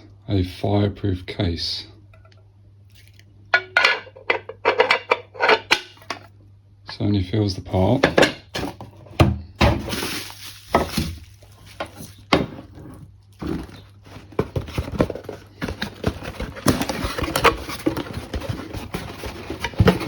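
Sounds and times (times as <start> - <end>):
packaging rustling: 9.7 - 20.0.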